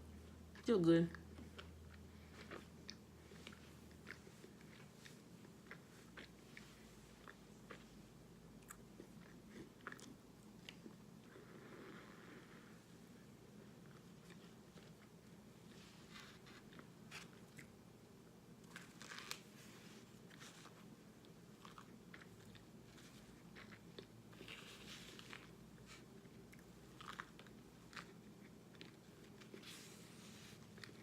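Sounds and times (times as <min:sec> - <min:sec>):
person crunching and chewing: 0:01.2 - 0:08.0, 0:08.6 - 0:11.0, 0:18.6 - 0:31.0.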